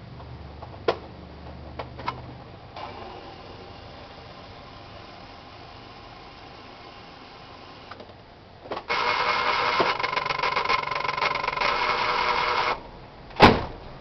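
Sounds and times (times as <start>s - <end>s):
loud electric buzz with rattle: 8.9s - 12.8s.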